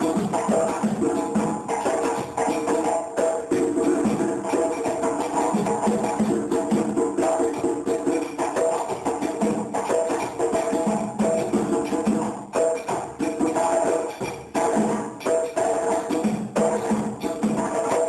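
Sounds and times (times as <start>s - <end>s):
hand drums playing: 0.0s - 18.0s.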